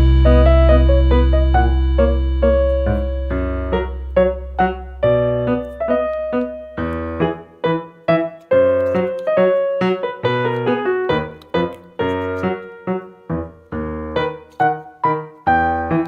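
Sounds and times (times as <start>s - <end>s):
piano melody: 0.0s - 16.0s.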